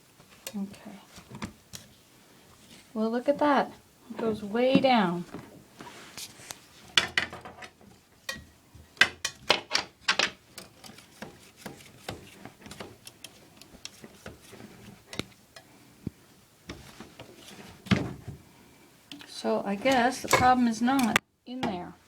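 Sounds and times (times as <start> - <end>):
wire scraping in drain pipe: 2.7 - 15.4.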